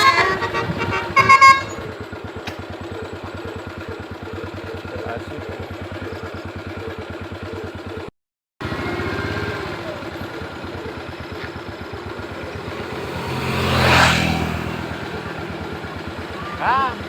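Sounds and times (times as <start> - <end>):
vehicle engine idling: 0.0 - 17.0.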